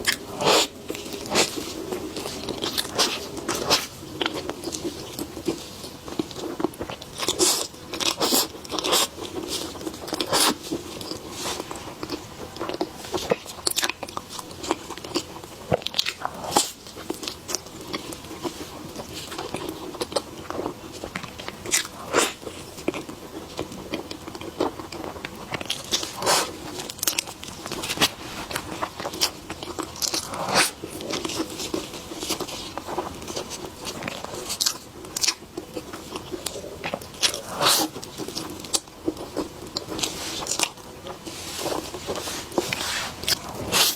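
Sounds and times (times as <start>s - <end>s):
person eating crunchy food: 0.0s - 43.9s.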